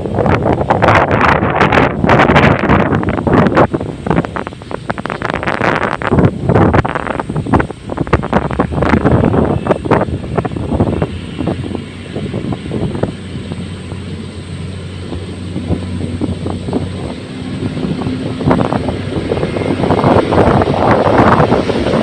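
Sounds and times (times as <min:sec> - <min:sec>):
diesel engine running: 0:00.0 - 0:22.0
wind noise on microphone: 0:00.0 - 0:22.0.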